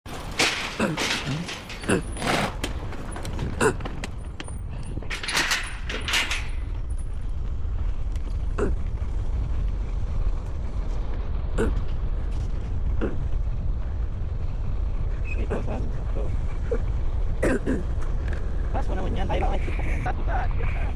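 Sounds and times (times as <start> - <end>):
machine creaks and knocks: 0.1 - 6.9
atv engine rumble: 0.1 - 20.9.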